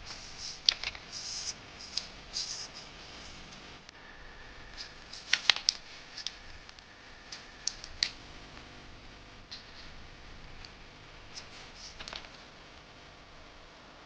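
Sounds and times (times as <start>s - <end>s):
paper rustling: 0.0s - 3.4s, 4.8s - 6.6s, 11.3s - 12.5s
paper creasing clicks: 0.0s - 3.6s, 4.7s - 8.2s, 9.5s - 12.6s.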